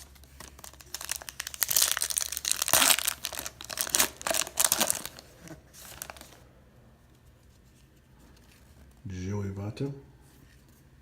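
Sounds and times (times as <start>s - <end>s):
wrapper tearing and crinkling: 0.0s - 6.4s.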